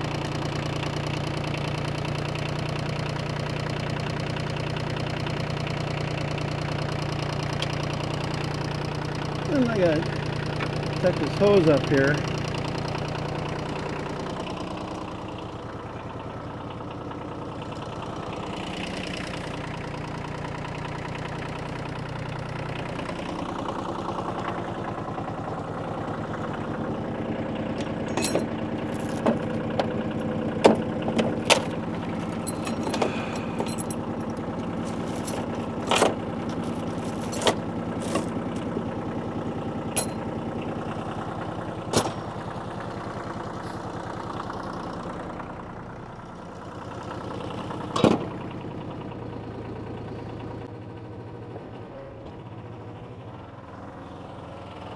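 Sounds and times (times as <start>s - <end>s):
tractor engine idling: 0.0s - 18.5s, 19.7s - 47.8s
sharp clicks and knocks: 30.6s - 34.0s.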